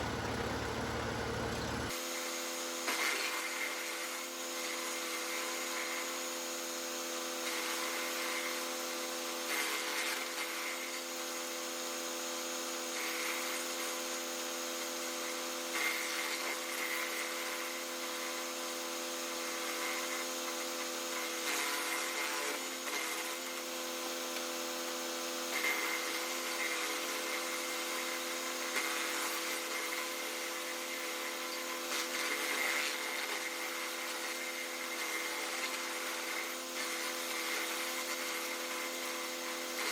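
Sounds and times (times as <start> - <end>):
tractor diesel engine running: 0.0 - 1.9.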